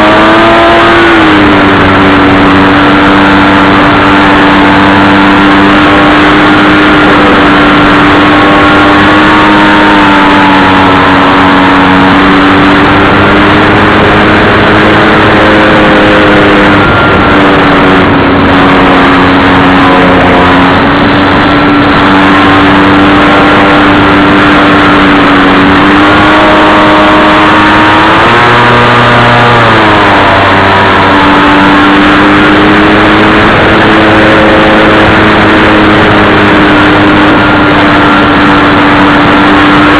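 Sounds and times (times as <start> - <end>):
model plane motor and propeller: 0.0 - 39.9.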